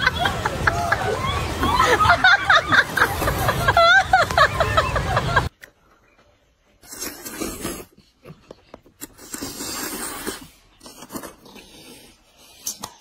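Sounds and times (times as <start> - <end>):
breathy slurping: 6.8 - 13.0
wet chewing clicks: 6.8 - 13.0.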